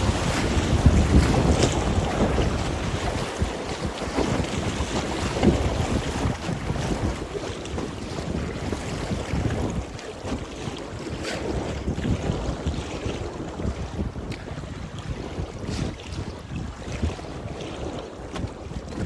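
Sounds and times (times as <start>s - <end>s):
river water rushing and splashing: 0.0s - 7.3s
wind buffeting microphone: 0.0s - 19.0s.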